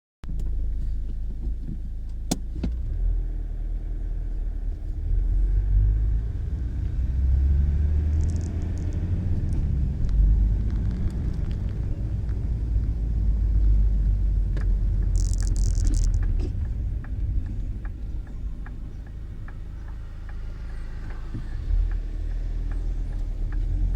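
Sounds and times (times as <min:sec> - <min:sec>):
loud low rumble: 0:04.2 - 0:23.9
sharp clicks: 0:08.0 - 0:23.9.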